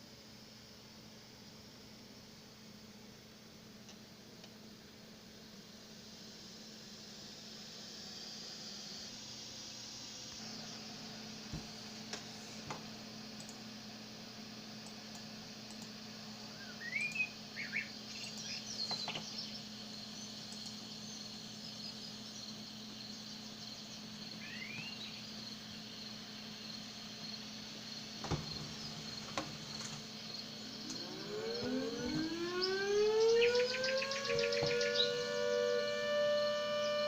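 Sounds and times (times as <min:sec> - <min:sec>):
steady low hum: 0:00.0 - 0:37.0
high-pitched hiss: 0:04.6 - 0:13.5, 0:15.7 - 0:32.1
birds chirping: 0:16.4 - 0:37.0.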